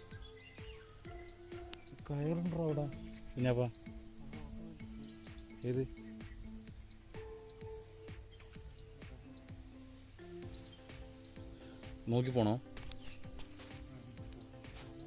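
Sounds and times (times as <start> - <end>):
crickets trilling: 0.0 - 15.0
faint low tones: 0.0 - 15.0.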